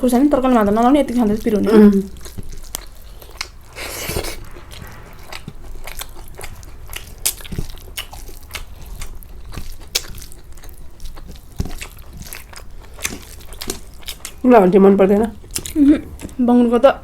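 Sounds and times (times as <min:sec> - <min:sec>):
person chewing crunchy food: 0:01.2 - 0:04.4, 0:05.3 - 0:14.5, 0:15.3 - 0:16.4.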